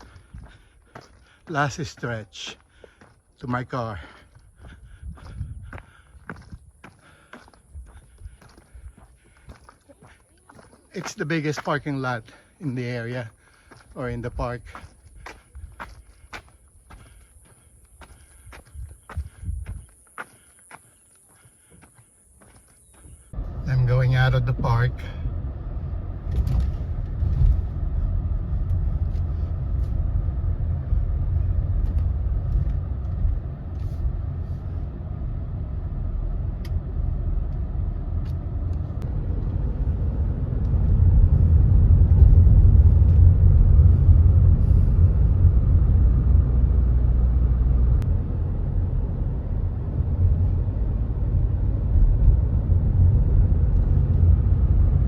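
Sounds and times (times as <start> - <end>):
car road and engine rumble: 0.0 - 55.0.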